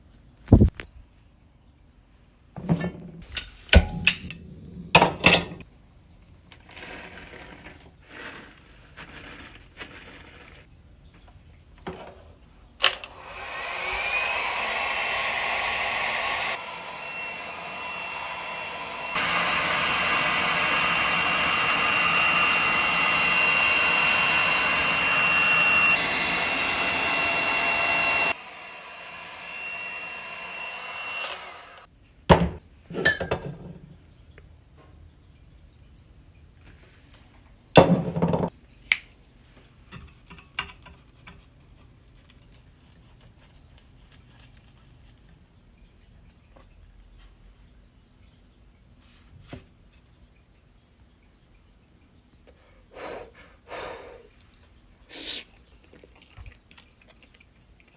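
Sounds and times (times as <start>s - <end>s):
heat gun fan blowing: 3.2s - 5.6s, 12.8s - 31.9s.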